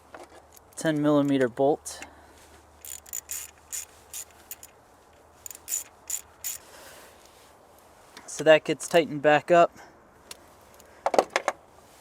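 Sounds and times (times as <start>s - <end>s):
ratchet wrench clicking: 2.8s - 4.8s, 5.4s - 6.7s.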